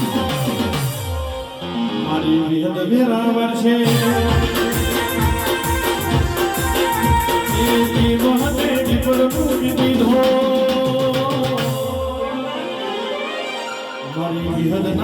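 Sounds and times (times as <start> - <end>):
steady drum beat: 0.0 - 1.1, 3.9 - 12.1
sustained melody line: 0.0 - 10.0.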